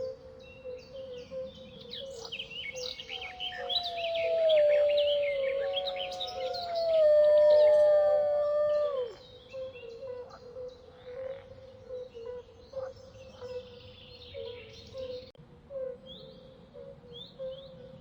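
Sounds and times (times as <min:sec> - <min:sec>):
birds chirping: 0:03.0 - 0:09.2
wolf howling: 0:03.1 - 0:09.2.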